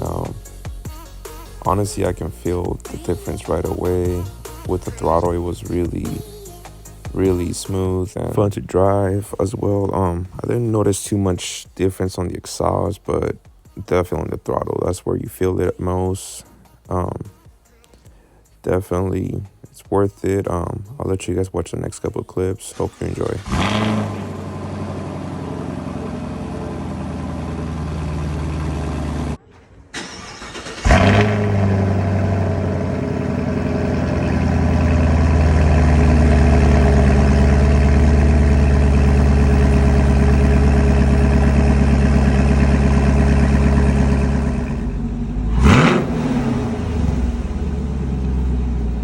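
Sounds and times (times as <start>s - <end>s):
car engine running and revving: 23.0s - 29.4s, 30.8s - 49.0s.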